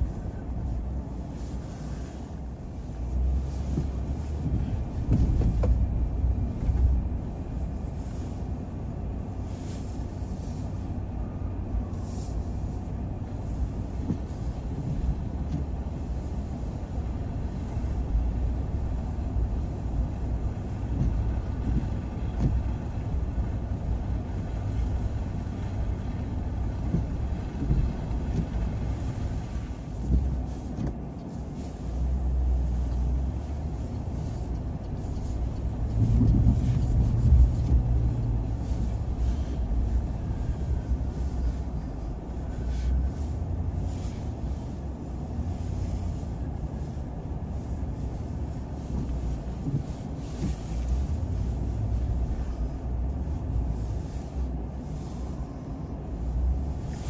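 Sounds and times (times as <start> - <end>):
car engine and road noise: 0.0 - 57.0.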